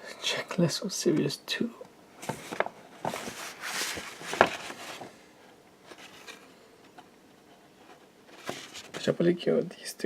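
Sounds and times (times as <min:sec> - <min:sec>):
trading cards rustling: 0:02.2 - 0:05.2.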